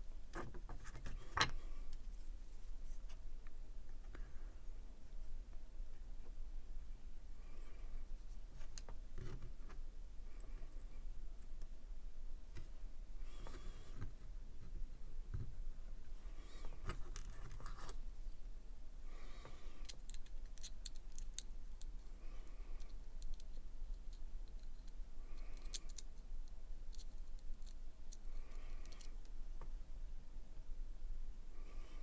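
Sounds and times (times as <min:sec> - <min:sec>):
small metal parts clicking: 0:19.7 - 0:22.0, 0:22.8 - 0:26.2.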